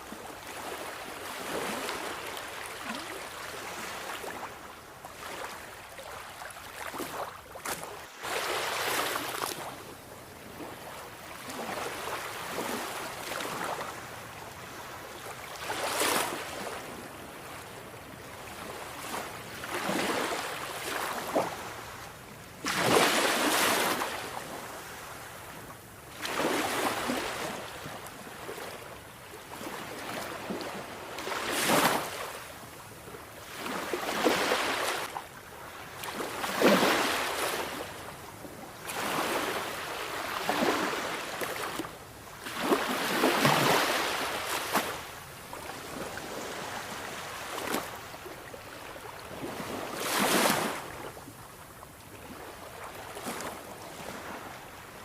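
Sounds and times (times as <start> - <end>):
sea waves breaking: 33.4 - 35.2, 35.8 - 37.9, 38.9 - 45.2.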